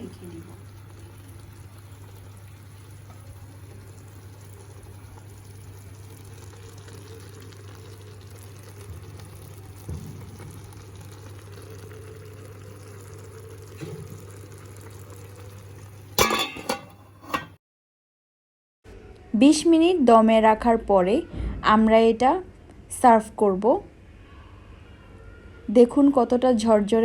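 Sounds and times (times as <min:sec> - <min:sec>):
pot bubbling on stove: 0:00.0 - 0:17.6.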